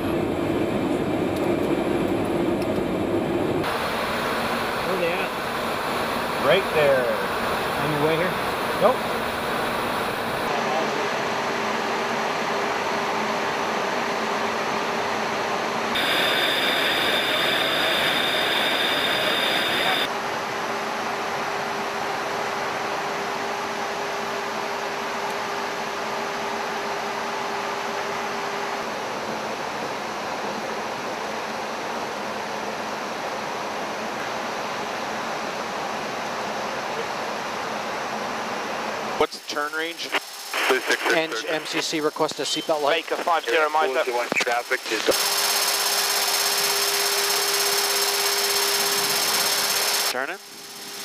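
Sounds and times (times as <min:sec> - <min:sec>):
high steady whine: 0:00.0 - 0:11.2, 0:15.9 - 0:20.2, 0:39.2 - 0:51.0
jet engine and airflow noise: 0:00.0 - 0:45.7.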